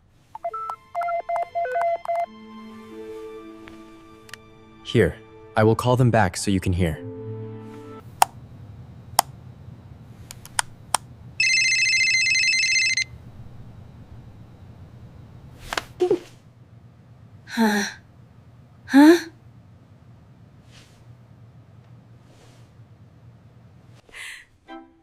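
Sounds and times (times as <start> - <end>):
phone ringing: 0.4 - 2.5, 11.4 - 14.8.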